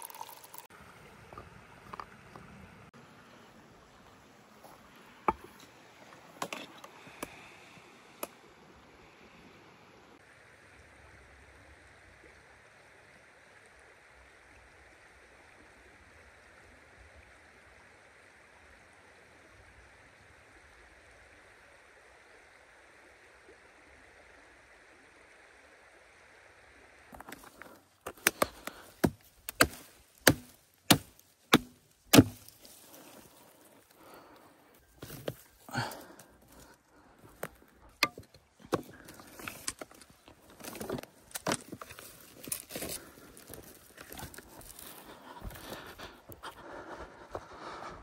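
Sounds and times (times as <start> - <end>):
stream running: 0.0 - 48.0
axe chopping firewood: 28.1 - 32.8, 37.9 - 40.0.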